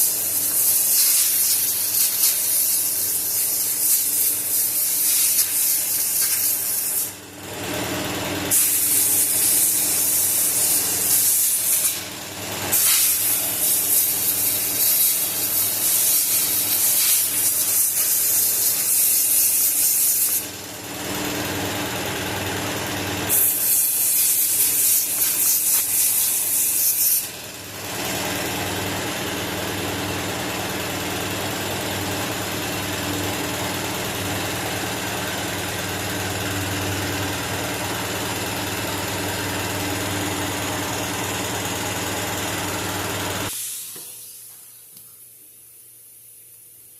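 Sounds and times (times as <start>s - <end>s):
compressed air hissing from nozzle: 0.0s - 7.2s, 8.5s - 12.1s, 12.7s - 20.5s, 23.3s - 27.3s, 43.5s - 44.5s
air compressor running: 0.0s - 44.8s.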